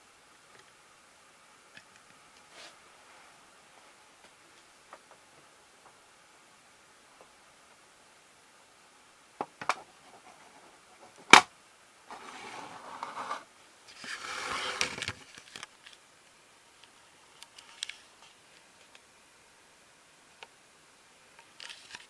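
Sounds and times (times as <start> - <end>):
scraping or rustling: 12.1 - 15.7.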